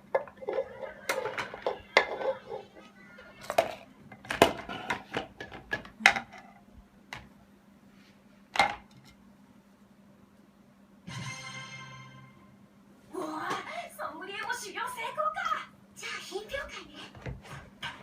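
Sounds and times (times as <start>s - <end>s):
dishes and utensils clinking: 0.0s - 6.5s
faint steady hum: 0.0s - 18.0s.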